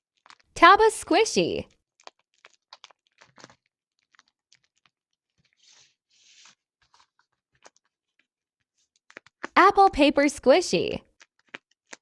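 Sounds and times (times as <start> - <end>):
soft rustle: 2.4 - 9.4.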